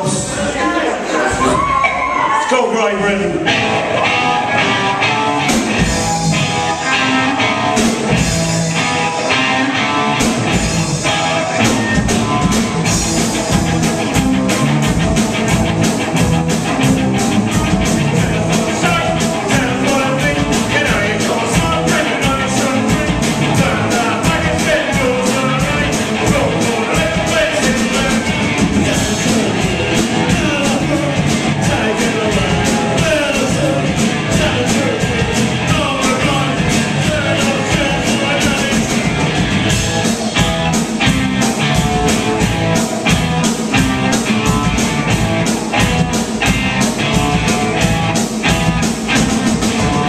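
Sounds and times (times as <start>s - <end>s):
live rock band playing: 0.0s - 50.0s
fast drum beat: 5.4s - 6.9s, 7.7s - 9.4s, 10.2s - 50.0s
person singing: 17.5s - 39.2s.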